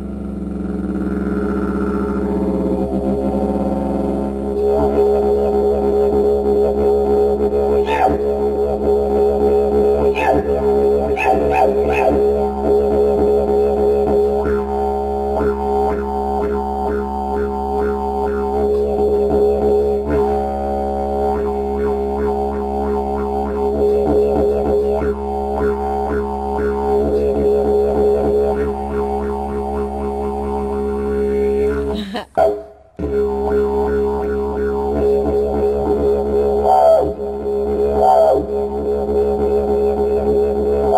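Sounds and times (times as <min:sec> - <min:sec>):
didgeridoo drone: 0:00.0 - 0:40.9.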